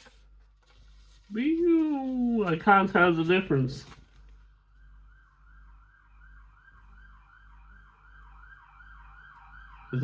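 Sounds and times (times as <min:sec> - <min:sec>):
faint siren yelping: 0:04.7 - 0:10.0.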